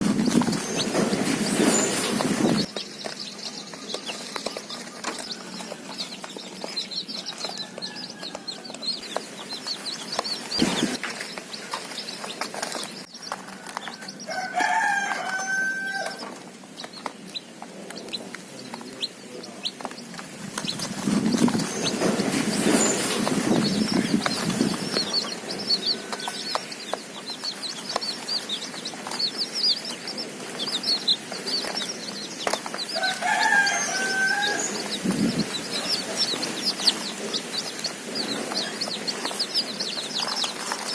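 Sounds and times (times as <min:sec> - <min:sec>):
baby chicks peeping: 0:00.0 - 0:40.9
rustling: 0:19.8 - 0:40.9.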